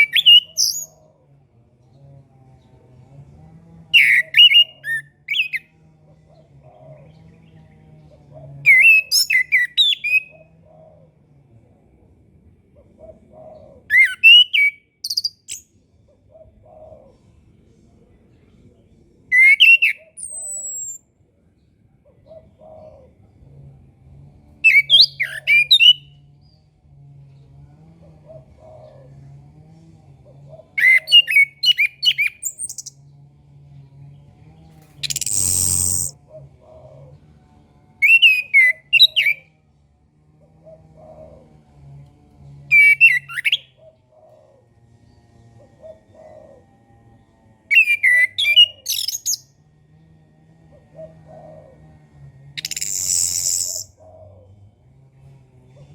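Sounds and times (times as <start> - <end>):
bird singing whistled phrases: 0.0 - 0.9, 13.9 - 15.6, 19.4 - 21.0, 35.0 - 36.1, 47.7 - 49.4, 52.6 - 53.9.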